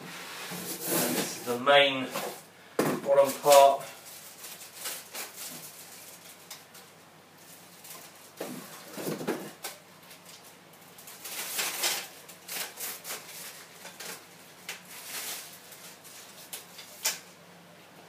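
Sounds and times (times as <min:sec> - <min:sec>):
rustling of unpacking: 0:03.1 - 0:17.4.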